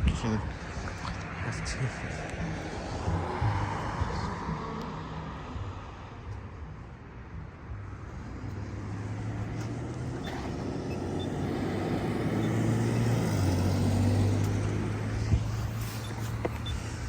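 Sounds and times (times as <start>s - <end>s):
vehicle engine and tyre noise: 0.0s - 17.0s
pedestrian signal ticking: 10.2s - 14.7s, 15.3s - 17.0s.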